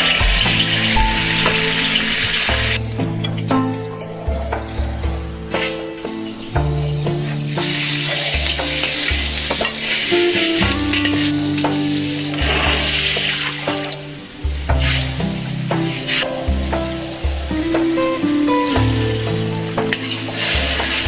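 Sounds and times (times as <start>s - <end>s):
background music: 0.0s - 21.0s
food sizzling in hot oil: 7.5s - 21.0s.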